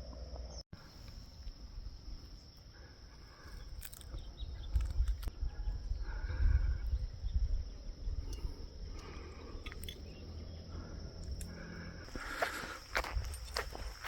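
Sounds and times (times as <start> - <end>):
insects droning: 0.0 - 14.0.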